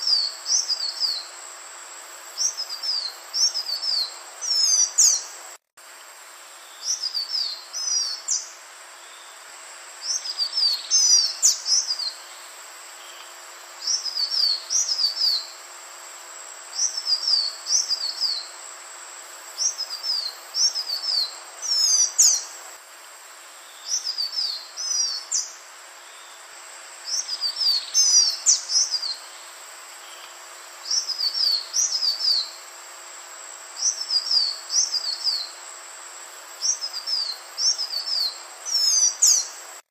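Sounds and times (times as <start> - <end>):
bird singing whistled notes: 0.0 - 1.3, 2.4 - 5.3, 6.6 - 9.3, 10.0 - 12.4, 13.8 - 15.6, 16.8 - 18.6, 19.6 - 22.5, 23.6 - 26.4, 27.1 - 29.4, 30.1 - 32.6, 33.8 - 35.6, 36.6 - 39.6.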